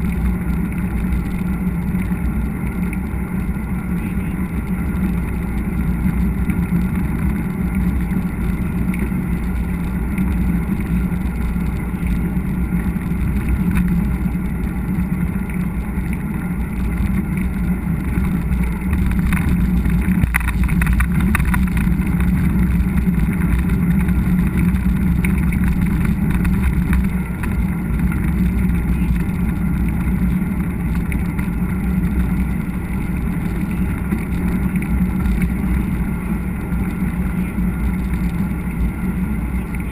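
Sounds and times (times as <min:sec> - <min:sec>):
mountain bike rumbling on trail: 0:00.0 - 0:39.9.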